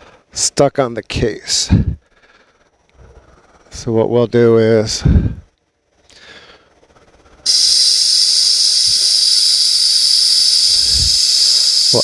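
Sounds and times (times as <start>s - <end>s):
air hissing out of a tire: 7.4s - 12.0s.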